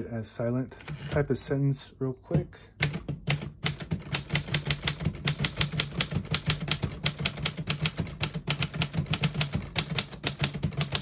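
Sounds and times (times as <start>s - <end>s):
typewriter key strikes: 2.8s - 11.0s.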